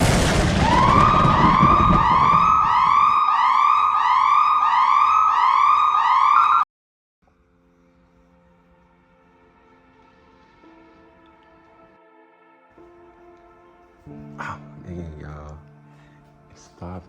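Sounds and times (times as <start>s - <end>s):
siren wailing: 0.4s - 6.7s.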